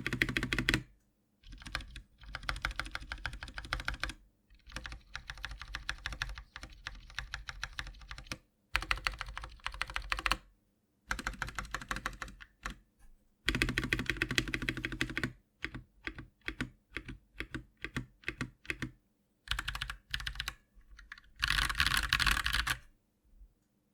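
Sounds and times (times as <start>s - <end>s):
mechanical keyboard typing: 0.0s - 10.4s, 11.1s - 12.8s, 13.5s - 22.8s.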